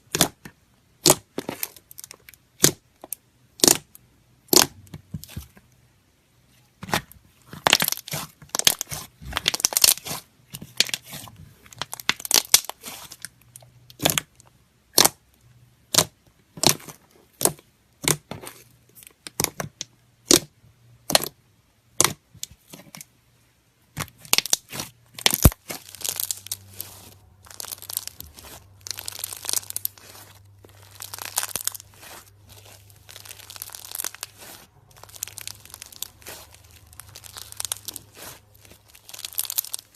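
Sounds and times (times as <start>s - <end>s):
slime squished crackling pops: 1.0s - 1.2s, 3.6s - 3.9s, 24.0s - 39.9s.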